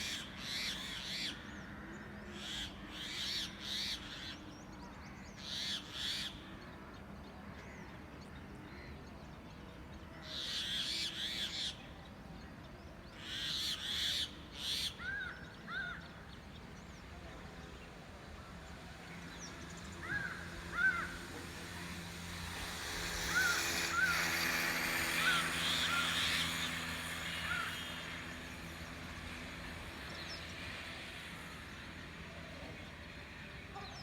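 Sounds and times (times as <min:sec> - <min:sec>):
rising-and-falling bird calls: 0:18.5 - 0:32.2.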